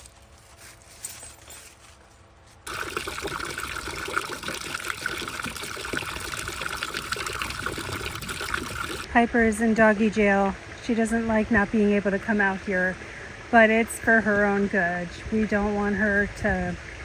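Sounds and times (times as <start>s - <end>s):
water running: 2.7s - 9.1s.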